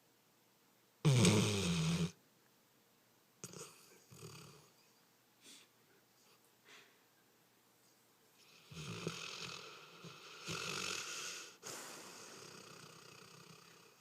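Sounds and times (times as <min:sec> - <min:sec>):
dog snoring: 0:01.0 - 0:02.2, 0:03.4 - 0:04.8, 0:08.4 - 0:14.0
dog breathing: 0:08.4 - 0:14.0.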